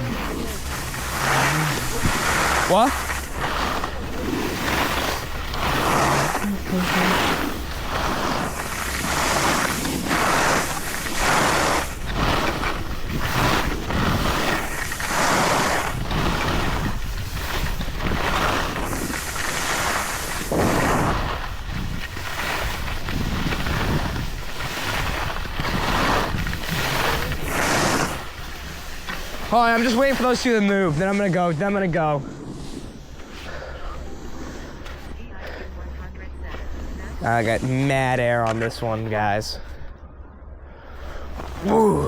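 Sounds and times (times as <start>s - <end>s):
edges scraping on snow: 0.0s - 35.2s, 36.6s - 39.4s
wind buffeting microphone: 20.2s - 29.0s.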